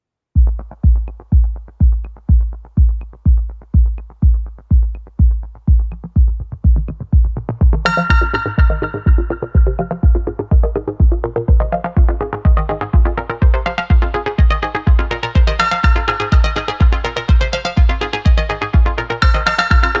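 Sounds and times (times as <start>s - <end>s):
kick drum thumping: 0.4s - 20.0s
bright synth chord: 7.9s - 10.3s.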